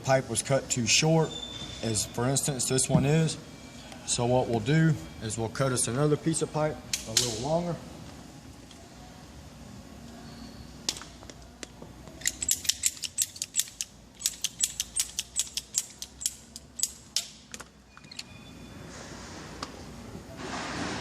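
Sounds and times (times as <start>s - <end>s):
pipe cutter clicking: 12.2s - 17.3s.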